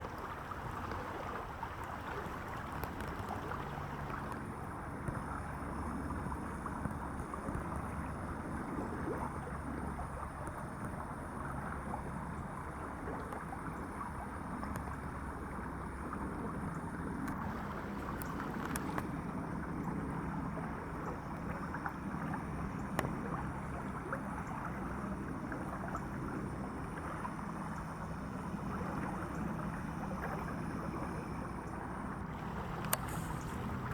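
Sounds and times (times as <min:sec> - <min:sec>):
faint low hum: 0:00.0 - 0:33.9
small clicks: 0:32.6 - 0:33.9.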